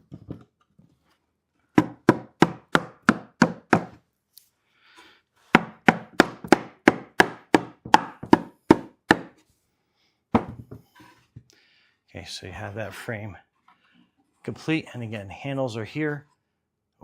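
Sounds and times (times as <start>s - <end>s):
wooden boards knocking: 1.8s - 4.0s, 5.5s - 9.4s, 10.4s - 10.8s.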